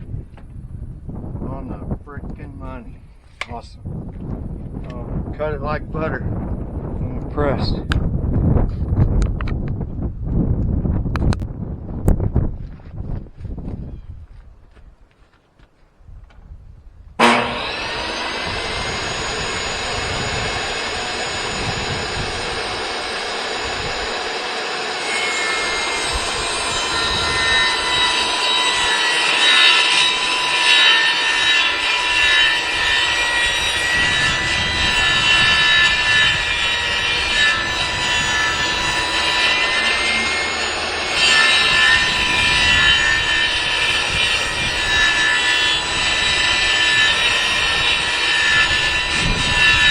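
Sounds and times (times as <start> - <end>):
saw blade cutting plywood: 17.2 - 49.9
table saw whining: 17.2 - 49.9.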